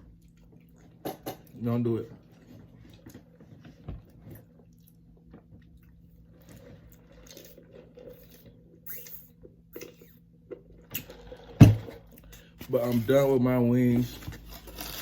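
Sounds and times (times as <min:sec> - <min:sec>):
person chewing: 0:04.5 - 0:10.2.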